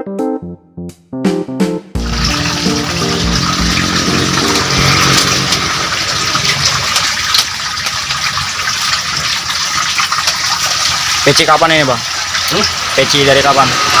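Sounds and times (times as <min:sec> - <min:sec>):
background music: 0:00.0 - 0:05.8
rushing gushing water: 0:02.0 - 0:14.0.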